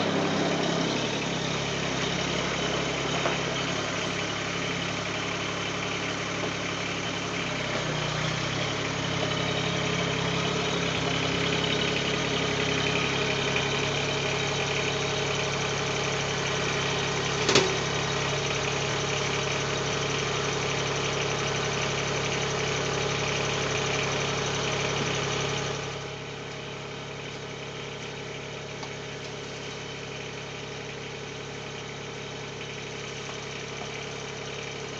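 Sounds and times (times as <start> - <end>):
tractor diesel engine running: 0.0 - 34.9
sharp metallic clank: 17.4 - 17.9.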